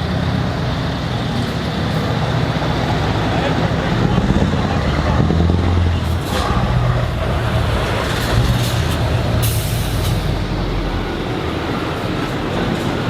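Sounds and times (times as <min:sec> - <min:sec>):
diesel truck engine idling: 0:00.0 - 0:06.0, 0:08.9 - 0:13.0
air brake hissing: 0:09.4 - 0:10.3.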